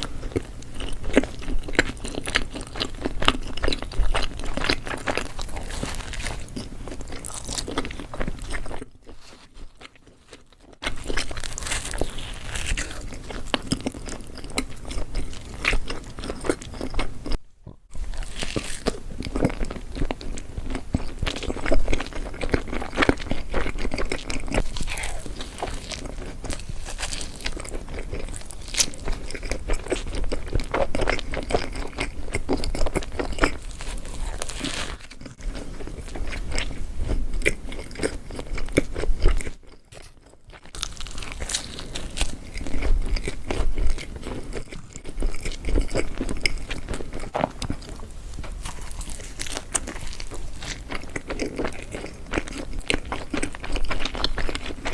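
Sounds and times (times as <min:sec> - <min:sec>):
biting and chewing food: 0:00.0 - 0:54.9.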